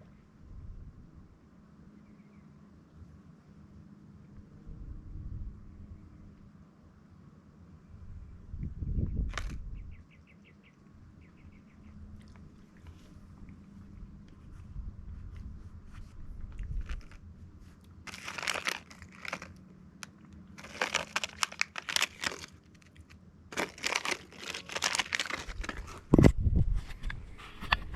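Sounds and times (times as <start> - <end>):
crinkling and rustling: 9.3 - 9.6, 12.2 - 27.9.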